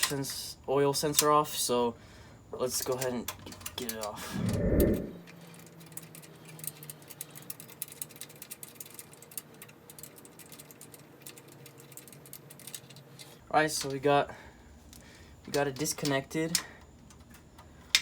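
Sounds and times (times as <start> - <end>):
faint steady hum: 4.2 - 5.3.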